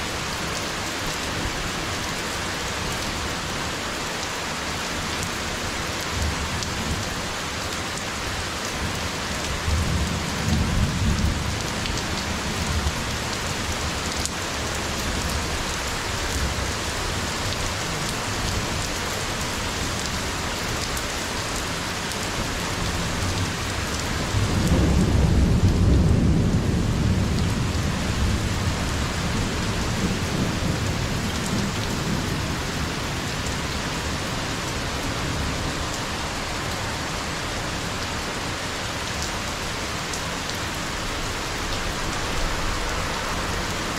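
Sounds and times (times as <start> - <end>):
heavy rain falling: 0.0 - 43.9.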